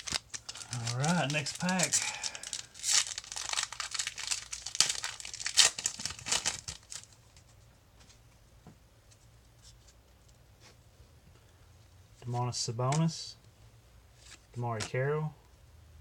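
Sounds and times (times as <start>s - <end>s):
cards ticking when handled: 0.0s - 7.0s
foil wrapper tearing and crinkling: 0.0s - 7.2s.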